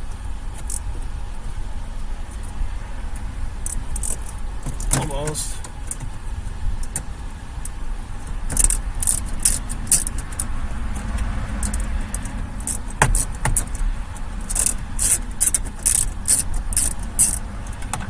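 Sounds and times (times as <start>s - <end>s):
sharp ticks: 3.1s - 5.0s, 6.8s - 18.0s.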